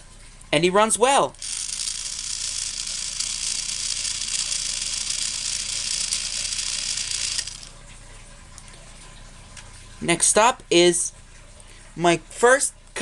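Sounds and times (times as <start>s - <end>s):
toy train motor whirring: 1.3s - 7.7s.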